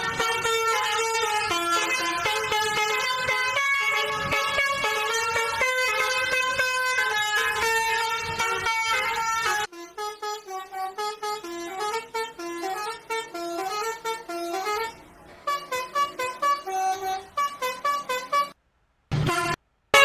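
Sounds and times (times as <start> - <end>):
musical bus horn melody: 0.0 - 20.0.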